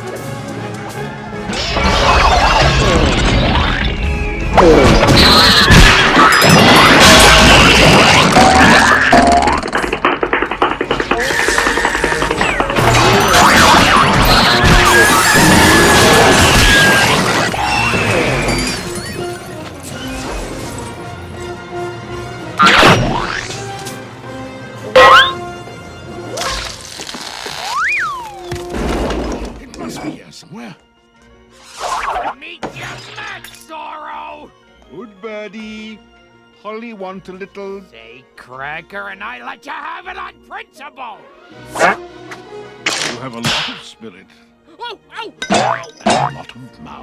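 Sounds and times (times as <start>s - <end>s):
film score music: 0.0s - 47.0s
cartoon crash: 1.5s - 4.0s, 4.6s - 10.0s, 11.0s - 18.9s, 25.0s - 25.4s.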